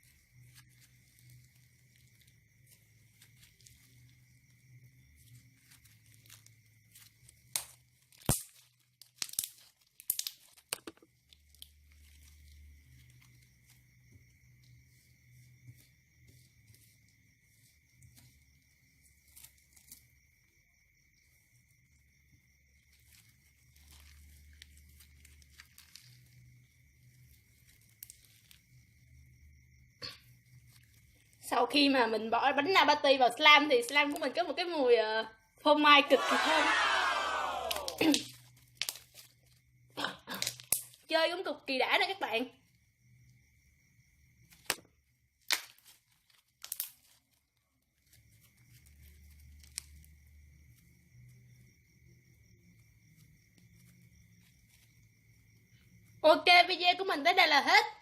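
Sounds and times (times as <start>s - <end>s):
slime crackling and popping: 6.2s - 12.4s, 37.7s - 39.4s, 40.3s - 41.1s, 45.4s - 47.4s
slime crackling pops: 7.5s - 11.0s, 45.4s - 46.0s.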